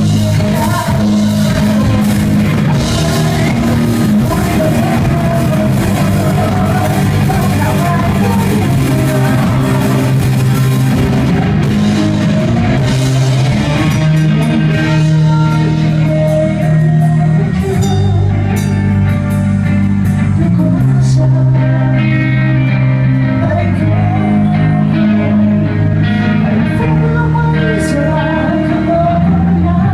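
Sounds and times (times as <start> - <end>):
drum kit with cymbals: 0.0 - 20.6
bass line: 0.0 - 29.9
rock band playing live: 0.0 - 29.9.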